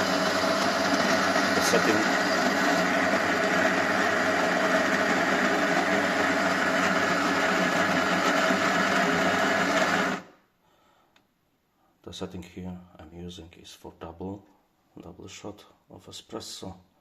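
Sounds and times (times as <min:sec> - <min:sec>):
coffee grinder motor: 0:00.0 - 0:10.3.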